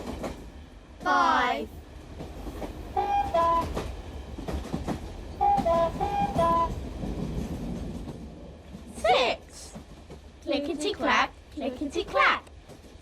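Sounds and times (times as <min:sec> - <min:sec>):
train clattering on track: 0:00.0 - 0:13.0
two-tone train horn toots: 0:02.9 - 0:03.8, 0:05.4 - 0:06.8.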